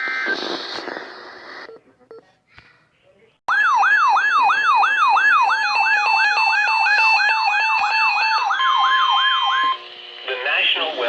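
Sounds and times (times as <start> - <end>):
electronic falling siren tone: 3.5 - 10.0
steady electronic tones: 4.3 - 11.0.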